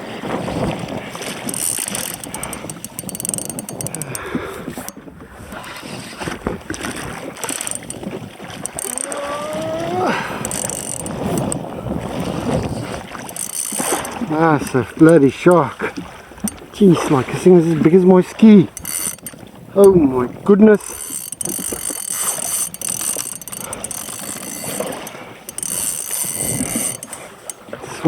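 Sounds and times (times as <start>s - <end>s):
fishing reel gears clicking: 1.2s - 5.0s, 6.7s - 11.6s, 12.3s - 15.5s, 18.7s - 20.1s, 20.7s - 27.6s
short rising groan: 8.8s - 10.5s.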